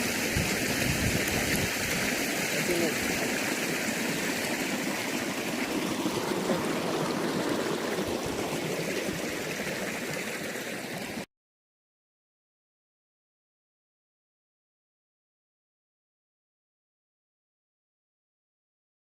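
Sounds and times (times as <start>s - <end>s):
mountain stream rushing: 0.0s - 11.3s.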